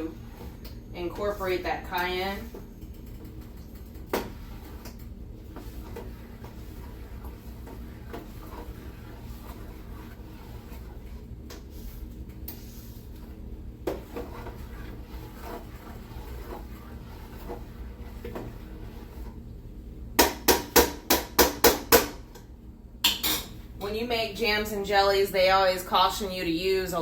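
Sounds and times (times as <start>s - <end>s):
spoon scraping pot: 0.0s - 19.4s
steady low hum: 0.0s - 27.0s.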